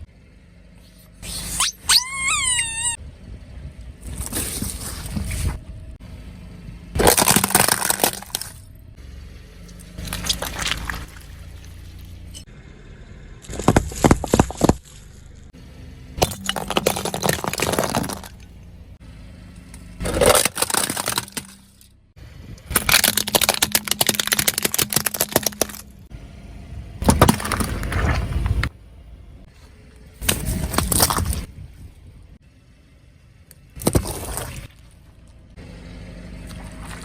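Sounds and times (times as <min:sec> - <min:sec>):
objects crushed under car tyres: 0:07.0 - 0:08.7, 0:09.7 - 0:12.5, 0:13.4 - 0:15.5, 0:16.2 - 0:18.7, 0:20.0 - 0:22.0, 0:22.7 - 0:26.1, 0:27.0 - 0:28.8, 0:30.2 - 0:31.5, 0:33.8 - 0:35.1.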